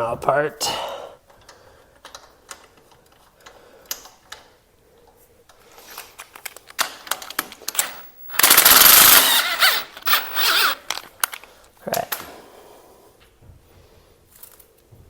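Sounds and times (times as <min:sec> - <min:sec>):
hand tool clicks and ticks: 0:06.2 - 0:11.5
socket ratchet rattling: 0:07.2 - 0:11.2.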